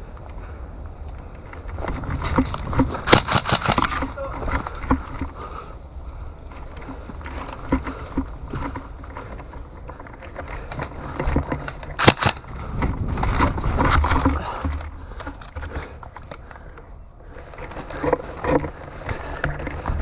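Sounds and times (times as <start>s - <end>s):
sharp crack: 2.3s - 5.0s, 11.7s - 12.5s
scattered clicks: 6.7s - 20.0s.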